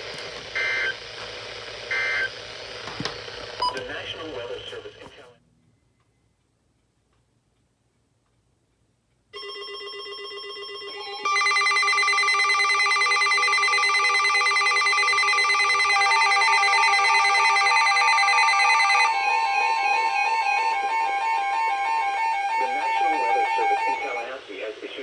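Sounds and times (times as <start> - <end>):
steady electronic alert tones: 11.0 - 24.3.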